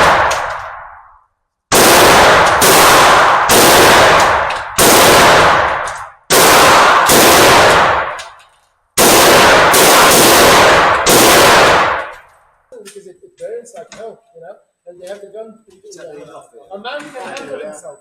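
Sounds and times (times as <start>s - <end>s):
handgun shots echoing: 1.7s - 8.4s.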